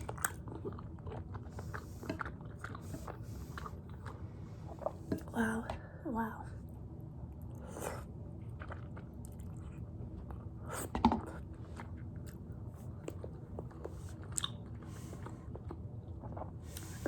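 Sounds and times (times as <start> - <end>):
chewing with wet mouth clicks: 0.0 - 4.2, 8.5 - 16.9.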